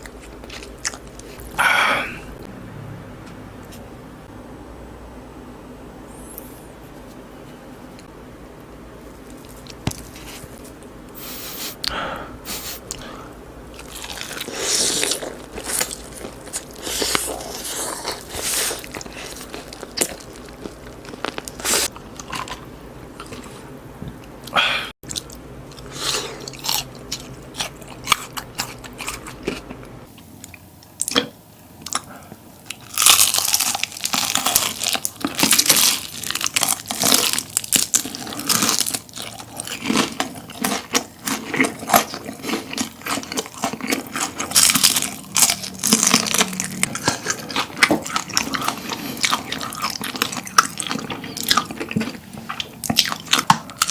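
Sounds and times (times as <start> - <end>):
chewing crunchy food: 0.0 - 1.6, 13.7 - 53.9
low background hum: 0.0 - 53.9.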